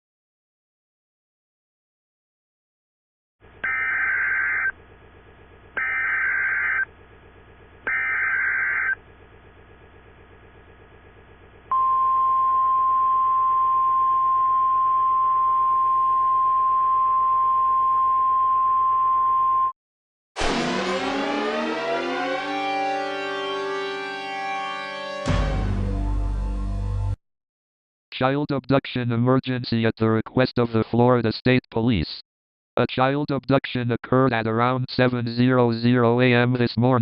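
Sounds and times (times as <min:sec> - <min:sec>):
warbling data tones: 0:03.6 - 0:04.7, 0:05.8 - 0:06.9, 0:07.9 - 0:09.0
siren: 0:03.6 - 0:04.8, 0:05.8 - 0:06.9, 0:07.8 - 0:09.0, 0:20.4 - 0:25.9.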